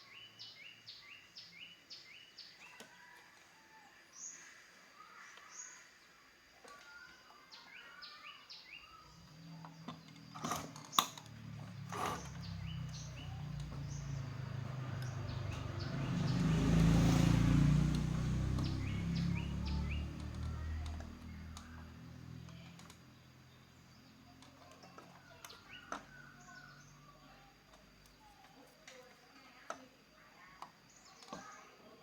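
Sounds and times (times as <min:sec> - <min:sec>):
small birds chirping: 0:00.0 - 0:32.0
motor vehicle passing: 0:09.0 - 0:28.0.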